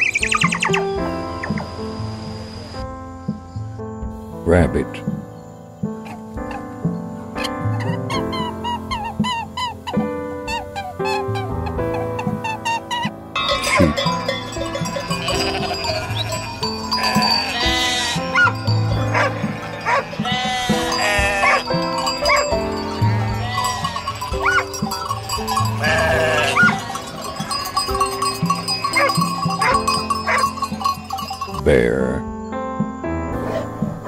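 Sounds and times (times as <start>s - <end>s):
background music: 0.0s - 34.0s
sheep bleating: 13.4s - 31.5s.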